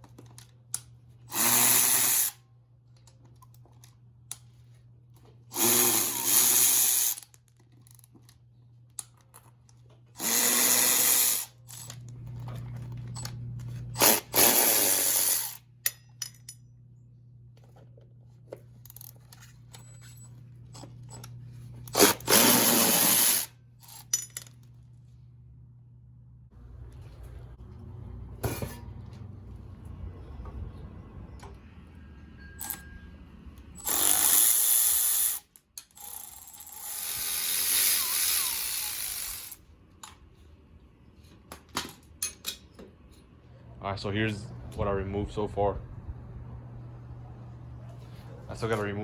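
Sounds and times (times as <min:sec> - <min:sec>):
steady low hum: 0:00.0 - 0:33.9, 0:42.9 - 0:49.0
power drill bursts: 0:01.3 - 0:02.4, 0:05.5 - 0:07.2, 0:10.2 - 0:11.9, 0:14.0 - 0:15.6, 0:21.9 - 0:23.5, 0:33.8 - 0:35.4, 0:36.0 - 0:39.6.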